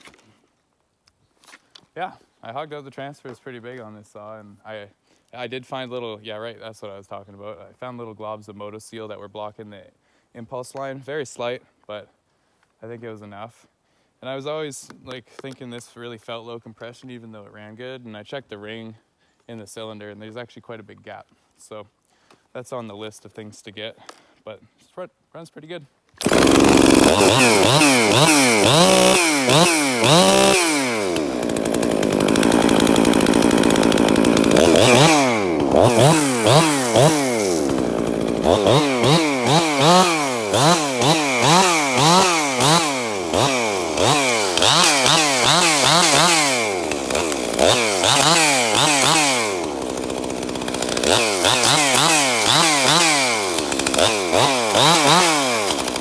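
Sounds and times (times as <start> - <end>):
chainsaw revving: 26.2 - 56.0.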